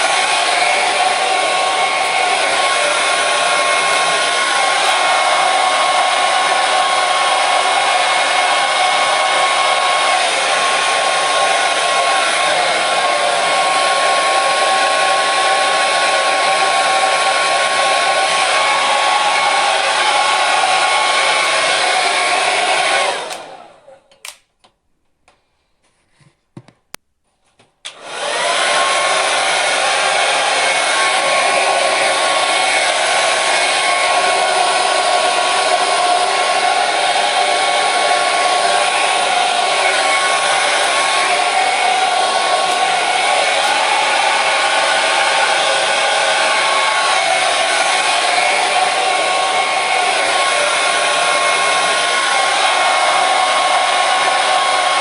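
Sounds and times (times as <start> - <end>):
hair dryer running: 0.0 - 24.4, 27.9 - 55.0.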